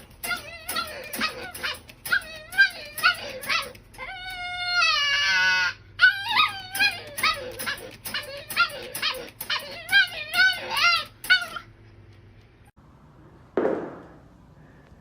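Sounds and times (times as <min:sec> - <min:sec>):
dog whining and yipping: 0:00.0 - 0:11.7.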